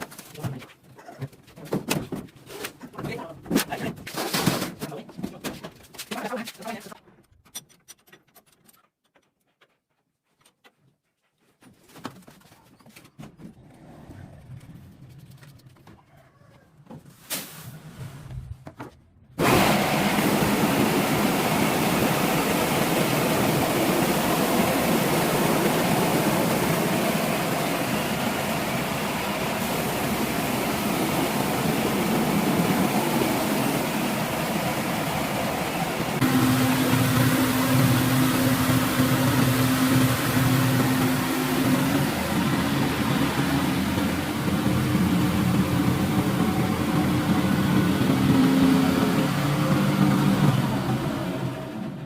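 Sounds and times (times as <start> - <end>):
motor running loudly: 19.4 - 52.0.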